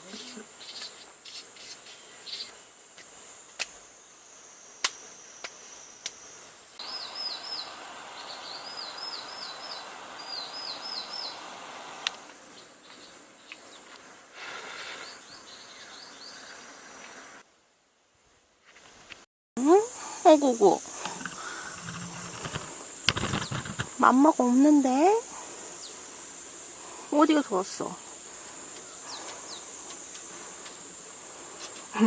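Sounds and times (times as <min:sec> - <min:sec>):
high insect drone: 0:00.0 - 0:17.4, 0:19.6 - 0:32.0
sharp clicks: 0:21.0 - 0:24.0.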